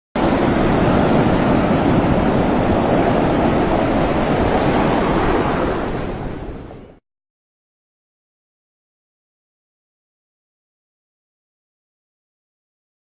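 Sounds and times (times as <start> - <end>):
sea surf waves: 0.2 - 7.0.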